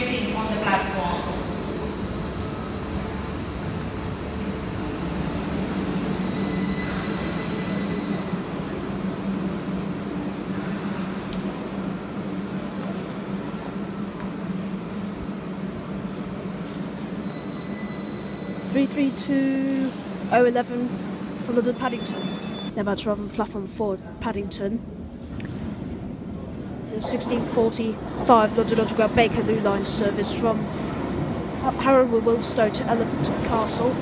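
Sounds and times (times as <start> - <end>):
wheel squeals: 5.3 - 8.5.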